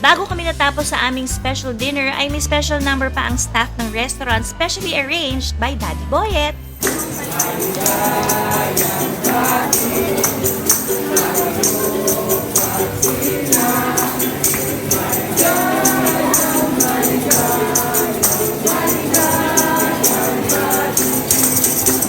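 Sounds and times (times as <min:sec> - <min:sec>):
tambourines jingling: 0:06.7 - 0:22.0
group singing: 0:06.8 - 0:22.0.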